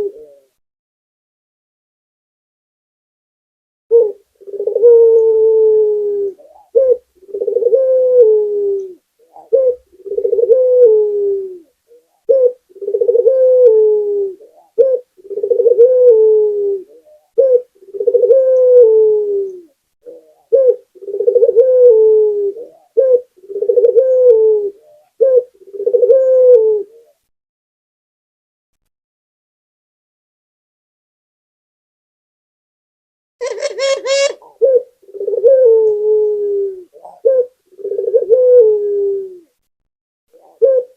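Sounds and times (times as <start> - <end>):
dove cooing: 0.0 - 0.6, 3.9 - 27.2, 33.4 - 39.6, 40.3 - 40.9.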